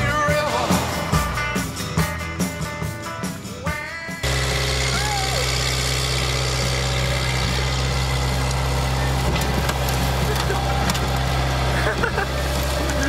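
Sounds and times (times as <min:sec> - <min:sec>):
car engine idling: 0:00.0 - 0:13.0
sharp knocks and clatter: 0:08.4 - 0:11.3.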